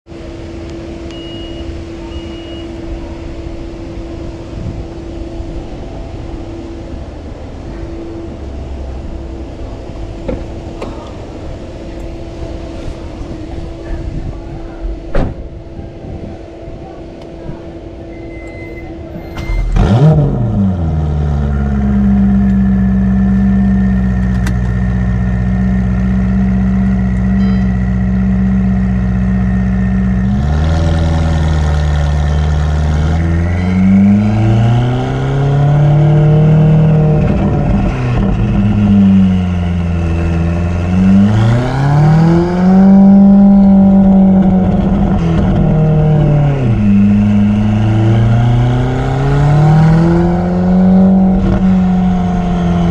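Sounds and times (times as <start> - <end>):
car engine starting and revving: 19.1 - 52.9.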